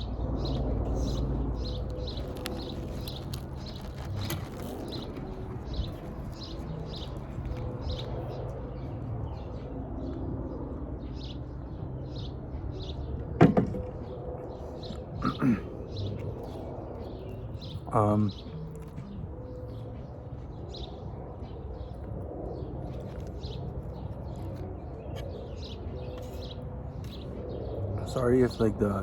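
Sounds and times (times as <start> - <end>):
small bird chirping: 0.0 - 9.5
steady low rumble: 0.0 - 29.0.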